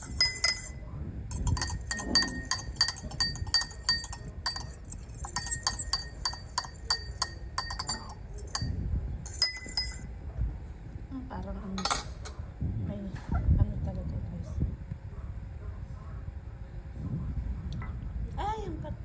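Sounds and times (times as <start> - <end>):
spoon clinking in a glass: 0.0 - 10.1, 11.8 - 12.4.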